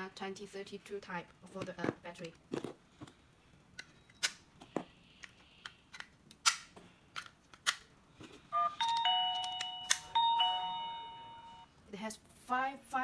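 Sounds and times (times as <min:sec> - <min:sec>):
doorbell electronic chime: 0:08.5 - 0:11.7.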